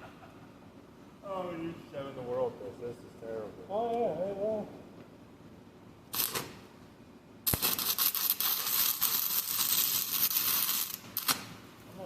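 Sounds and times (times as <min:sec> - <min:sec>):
welding arc crackling: 0:06.1 - 0:06.7, 0:07.4 - 0:11.6.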